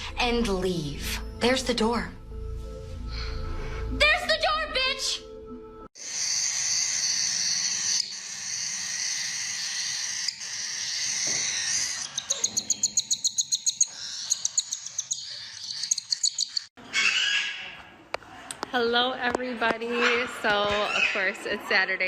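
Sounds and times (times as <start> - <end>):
parrot calling: 6.0 - 17.9, 19.9 - 21.3.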